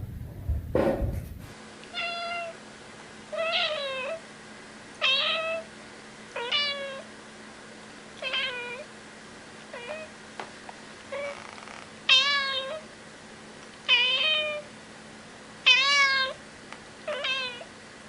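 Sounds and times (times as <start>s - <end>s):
cat meowing: 3.3s - 4.2s, 5.0s - 5.7s, 6.4s - 7.1s, 8.2s - 8.9s, 9.7s - 10.1s, 11.1s - 11.5s, 12.1s - 12.8s, 13.9s - 14.6s, 15.6s - 16.4s, 17.1s - 17.7s.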